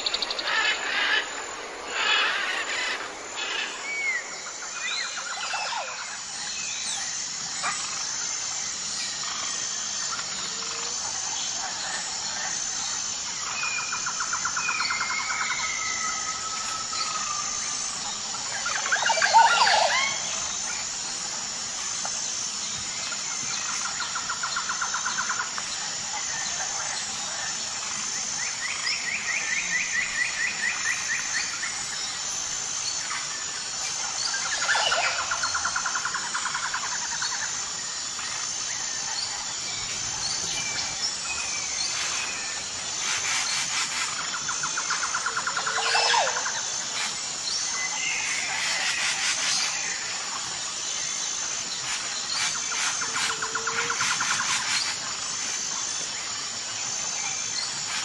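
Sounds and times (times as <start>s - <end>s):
birds calling: 0.0s - 4.4s
swooping bird calls: 0.0s - 6.0s
high-pitched insect chorus: 0.0s - 58.0s.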